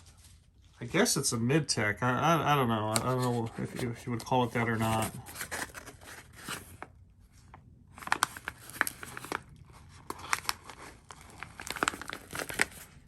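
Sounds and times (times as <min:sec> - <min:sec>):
packaging crackling and tearing: 0:02.9 - 0:06.9, 0:07.9 - 0:13.0.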